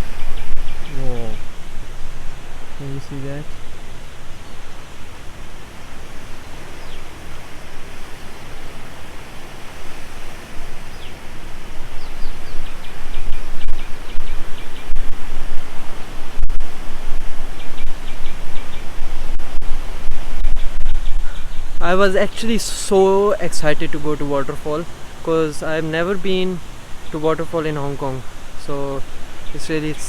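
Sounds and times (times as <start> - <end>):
bird chirping: 0.0 - 3.7, 6.2 - 7.4, 10.7 - 16.1, 17.3 - 30.0
waterfall roaring: 0.0 - 30.0.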